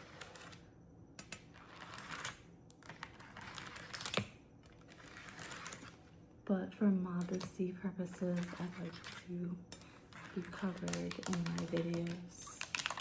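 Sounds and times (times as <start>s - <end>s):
typing on a clicky keyboard: 10.4s - 13.0s.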